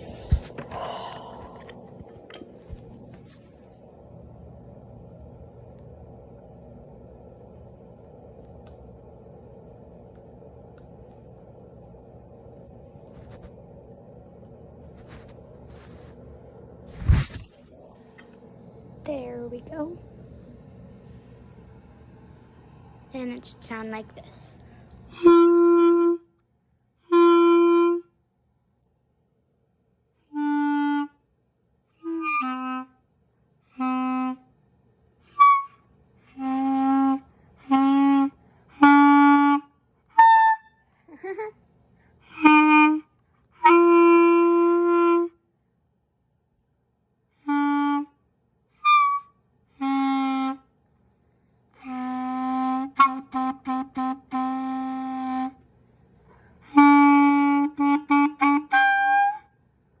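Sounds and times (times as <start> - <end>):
clarinet notes: 25.1 - 26.3, 27.0 - 28.2, 30.3 - 31.2, 32.0 - 33.0, 33.7 - 34.5, 35.2 - 40.7, 42.2 - 45.4, 47.4 - 48.2, 48.8 - 50.7, 51.8 - 55.6, 56.6 - 59.5
clarinet squeaks: 48.8 - 49.3.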